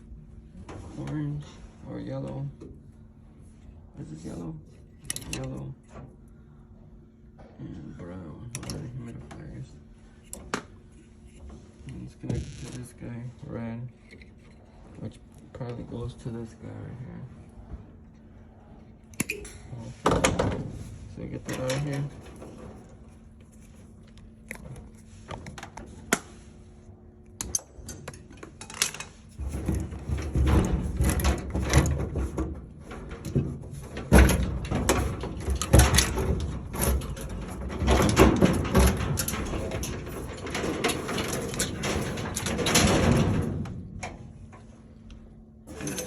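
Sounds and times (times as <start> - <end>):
parts and tools clattering: 19.1 - 26.2, 27.4 - 46.0.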